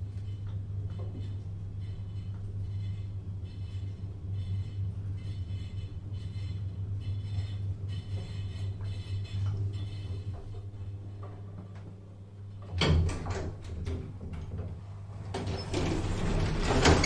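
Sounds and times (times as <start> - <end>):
elevator humming: 12.4 - 17.0
elevator doors sliding open: 12.7 - 17.0
elevator stopping clunk: 12.9 - 17.0.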